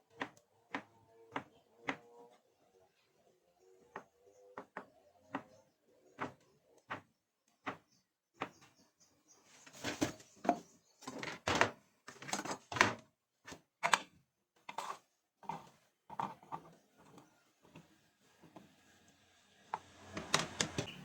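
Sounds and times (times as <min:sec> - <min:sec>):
kitchen items clattering: 0:09.6 - 0:13.0, 0:14.6 - 0:18.6.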